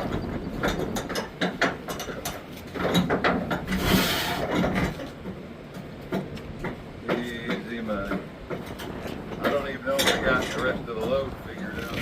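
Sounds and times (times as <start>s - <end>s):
strap scraping: 2.6s - 5.2s.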